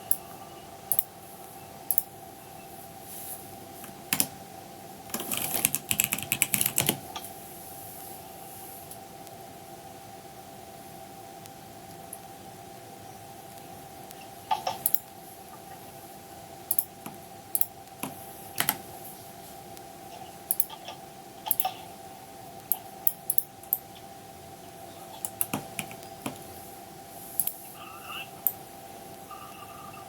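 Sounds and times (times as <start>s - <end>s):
mouse buttons clicking: 0.0s - 1.1s, 1.9s - 2.1s, 20.5s - 20.8s
steady hum: 0.0s - 30.0s
keyboard keys clicking: 5.1s - 7.2s, 16.7s - 18.8s.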